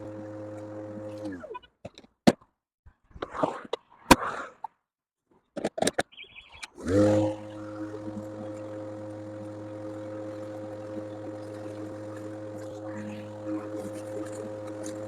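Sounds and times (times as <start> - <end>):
lawn mower electric motor: 0.0 - 1.6, 6.7 - 15.0.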